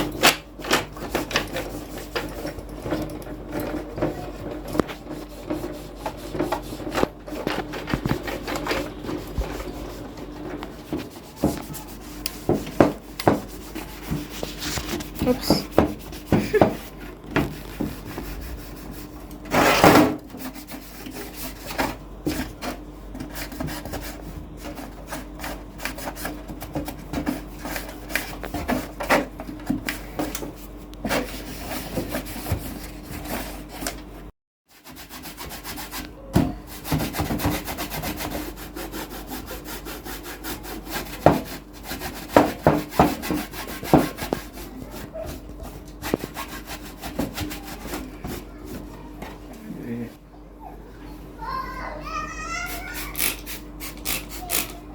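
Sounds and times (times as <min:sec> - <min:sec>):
hand rubbing and scrubbing: 0:01.1 - 0:29.0, 0:34.8 - 0:49.0.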